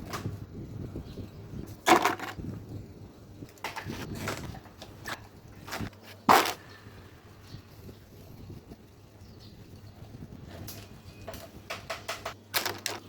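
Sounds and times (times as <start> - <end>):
sharp knocks and clicks: 11.2 - 13.0.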